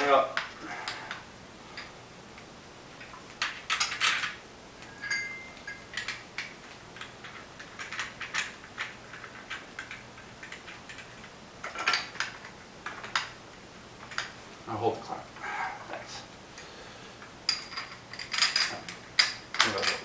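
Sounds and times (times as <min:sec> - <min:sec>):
metal pipes and clamps clinking: 0:03.4 - 0:06.2, 0:17.5 - 0:20.0.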